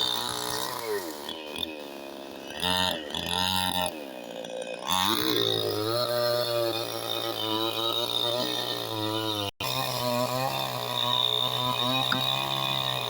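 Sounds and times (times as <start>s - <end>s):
chainsaw cutting: 0.0s - 13.0s.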